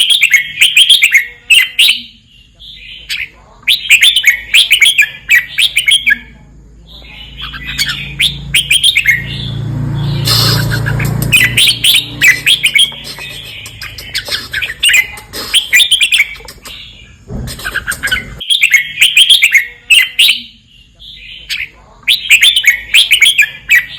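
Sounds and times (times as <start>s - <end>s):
bird singing warbled phrases: 0.0s - 23.9s.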